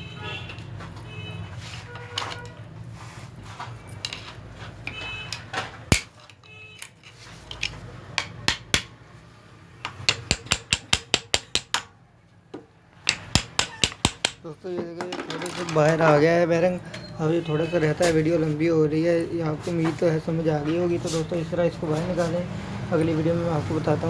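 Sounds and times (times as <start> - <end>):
hammer striking metal: 5.9 - 6.1, 8.2 - 9.0, 9.9 - 11.9, 13.1 - 14.4.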